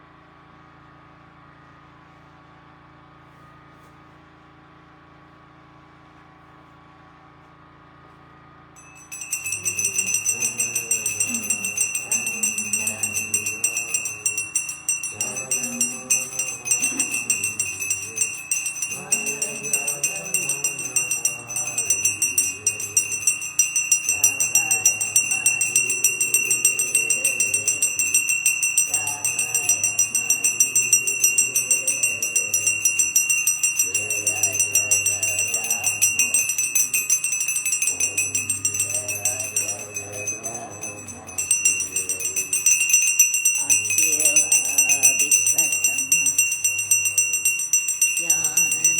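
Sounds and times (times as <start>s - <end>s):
hand bell ringing rapidly: 8.8s - 48.9s
group singing: 8.9s - 48.9s.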